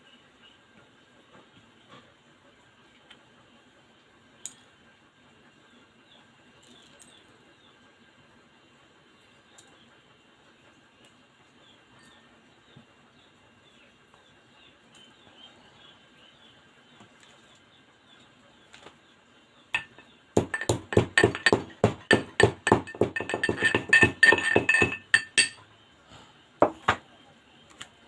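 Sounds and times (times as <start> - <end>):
spoon clinking against a glass: 19.8 - 25.6.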